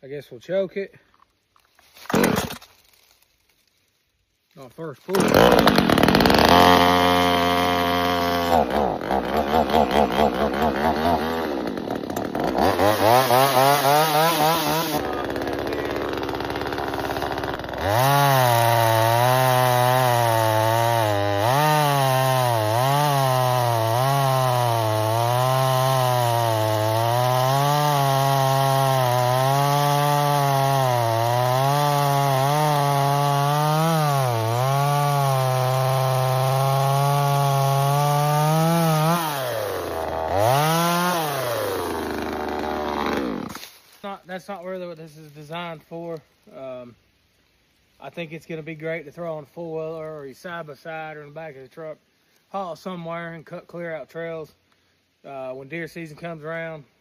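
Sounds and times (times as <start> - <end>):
chainsaw engine revving: 2.0 - 2.6, 5.0 - 43.8.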